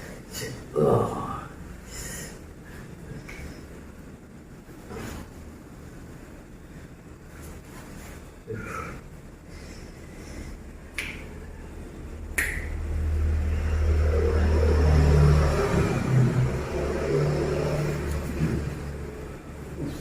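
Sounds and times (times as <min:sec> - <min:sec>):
low engine rumble: 0:01.6 - 0:20.0
sharp snaps: 0:10.9 - 0:11.4, 0:12.3 - 0:12.9.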